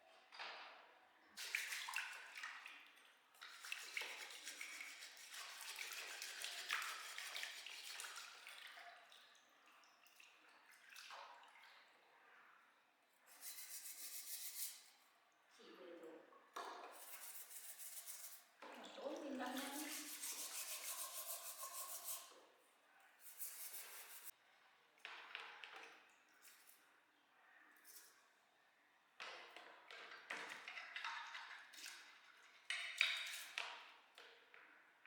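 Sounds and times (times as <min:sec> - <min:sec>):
water dripping: 0:01.4 - 0:12.4, 0:18.6 - 0:22.4, 0:29.2 - 0:34.8
water running and splashing: 0:03.4 - 0:09.4, 0:18.6 - 0:22.3.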